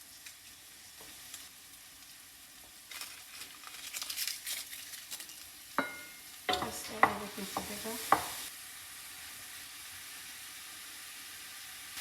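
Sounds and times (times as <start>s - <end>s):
sauce sizzling in a pot: 0.0s - 12.0s
crackling and rustling: 2.8s - 5.6s.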